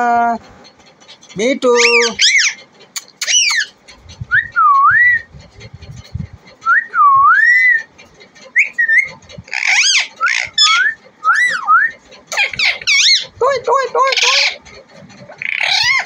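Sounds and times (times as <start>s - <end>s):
parrot whistling: 1.8s - 2.6s, 3.2s - 5.3s, 6.6s - 7.8s, 8.5s - 13.3s, 15.4s - 16.0s
harsh parrot calls: 1.8s - 3.8s, 8.5s - 14.7s, 15.3s - 16.0s.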